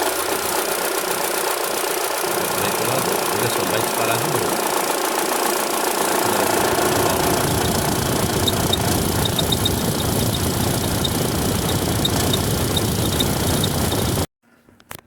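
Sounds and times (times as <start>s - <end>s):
car engine idling: 0.0s - 14.3s
radiator cooling fan rushing: 0.0s - 14.3s.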